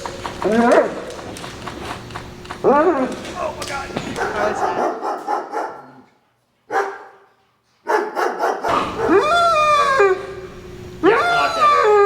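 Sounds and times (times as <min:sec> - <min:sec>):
dog barking: 0:04.0 - 0:06.1, 0:06.7 - 0:10.4
long drawn-out dog bark: 0:04.2 - 0:06.0, 0:06.7 - 0:07.2, 0:07.9 - 0:09.2.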